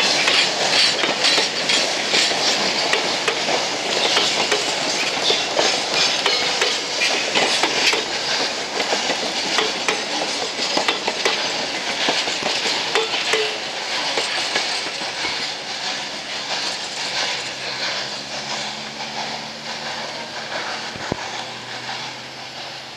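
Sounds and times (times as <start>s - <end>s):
train wheels clattering over rail joints: 0.0s - 22.9s.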